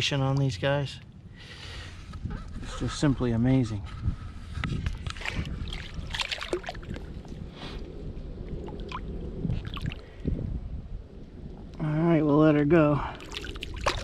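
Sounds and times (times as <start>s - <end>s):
water sloshing and trickling: 4.6s - 10.3s, 13.1s - 14.0s
small splashes and knocks: 4.9s - 7.4s, 8.7s - 10.0s, 13.1s - 14.0s.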